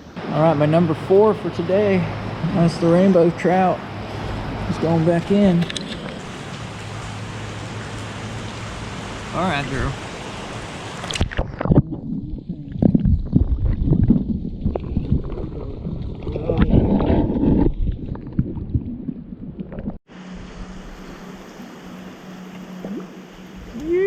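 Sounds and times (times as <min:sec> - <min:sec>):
flowing water rushing: 0:00.1 - 0:12.8, 0:17.8 - 0:24.0
muffled water sloshing and gurgling: 0:03.8 - 0:24.0.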